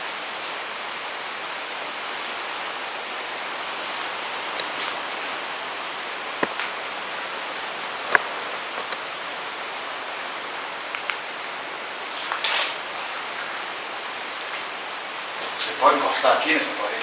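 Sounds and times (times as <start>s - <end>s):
rustle: 0.0s - 17.0s
sharp clicks: 10.9s - 11.3s.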